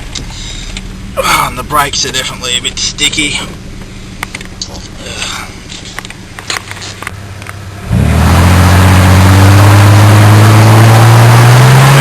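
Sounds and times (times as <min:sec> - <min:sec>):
car engine accelerating: 0:00.0 - 0:12.0.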